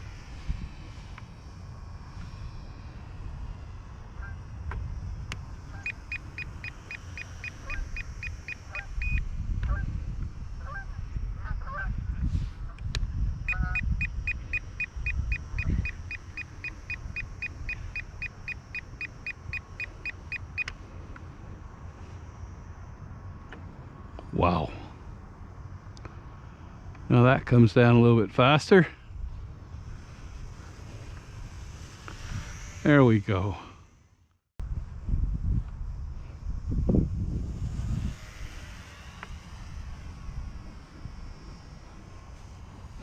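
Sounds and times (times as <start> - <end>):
rapid high beeping: 5.8 - 9.2, 13.5 - 20.7
wind buffeting microphone: 8.8 - 16.2, 34.6 - 38.8.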